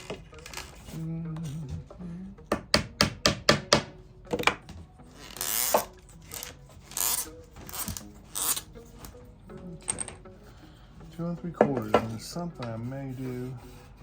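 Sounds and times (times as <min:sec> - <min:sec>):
wood rubbing rasping: 0:11.2 - 0:14.0.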